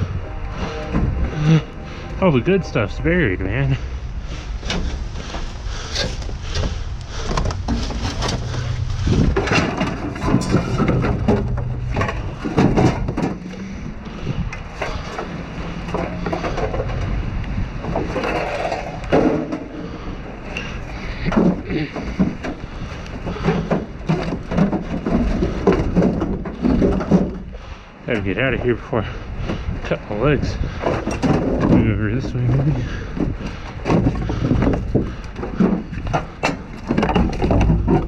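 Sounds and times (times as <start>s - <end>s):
debris crunching and clattering: 0.6s - 29.8s, 30.5s - 38.0s
footsteps on debris: 4.1s - 17.1s, 30.8s - 38.0s.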